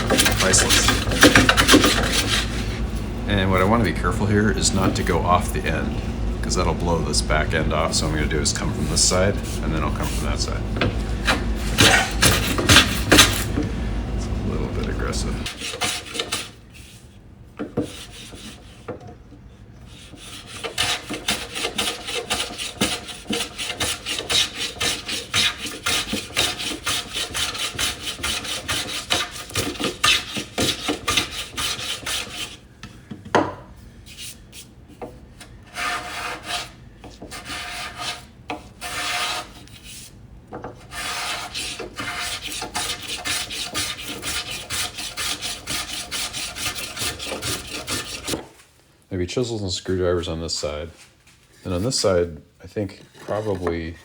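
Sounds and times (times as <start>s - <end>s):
hand saw cutting wood: 0.0s - 5.8s, 6.5s - 13.6s, 14.2s - 17.0s, 17.6s - 19.0s, 19.8s - 32.6s, 34.1s - 48.5s.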